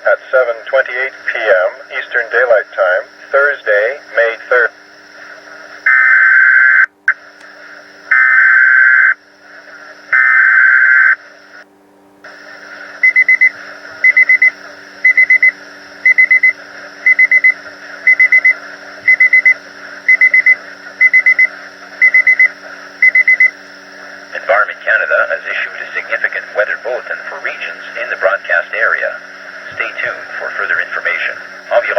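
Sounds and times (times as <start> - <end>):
faint hum and hiss: 0.0 - 31.9
rapid triple beeps: 13.0 - 29.3
warbling digital header tones: 13.0 - 31.9.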